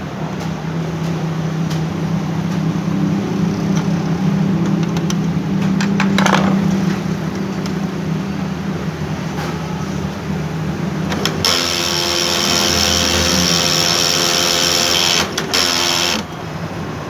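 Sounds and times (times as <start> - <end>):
copier motor humming: 0.0 - 17.0
sharp clicks: 11.1 - 16.4.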